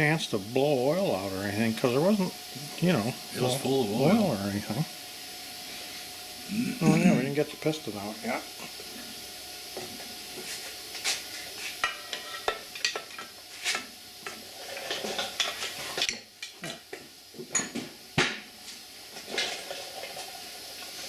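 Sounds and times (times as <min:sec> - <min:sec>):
steady low hiss: 0:00.0 - 0:21.0
metal tools clinking and scraping: 0:11.8 - 0:13.4, 0:17.5 - 0:17.8.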